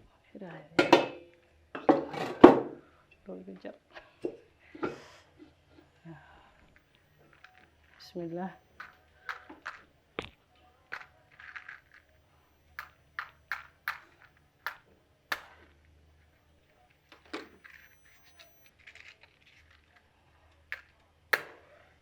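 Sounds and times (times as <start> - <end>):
utensils and containers clinking: 6.7 - 12.1.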